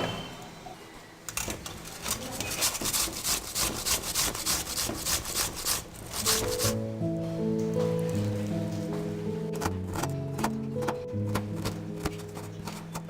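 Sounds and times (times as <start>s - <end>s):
rhythmic scraping strokes: 1.8s - 6.8s.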